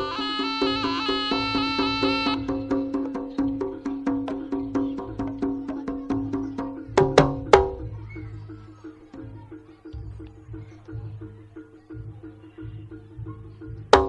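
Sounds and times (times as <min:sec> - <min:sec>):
ringing tones: 0:00.0 - 0:02.4
fast percussion: 0:00.0 - 0:14.0
low drum: 0:00.0 - 0:14.0.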